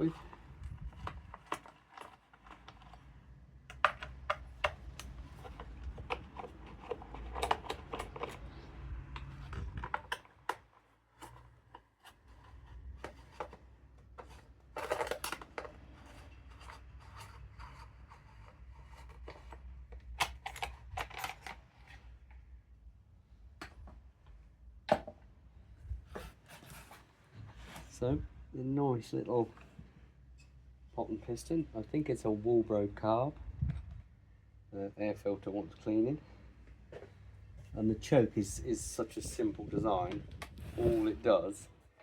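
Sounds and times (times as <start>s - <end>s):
tools and plastic parts clicking: 0.0s - 22.0s.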